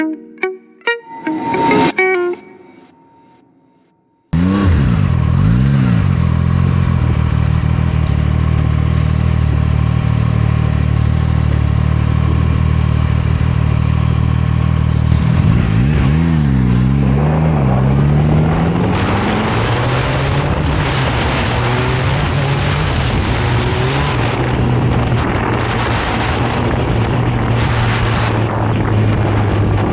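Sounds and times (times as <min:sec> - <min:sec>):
motorcycle accelerating: 0:04.4 - 0:29.9
motorcycle engine revving: 0:04.4 - 0:29.9
wind noise: 0:15.1 - 0:29.9.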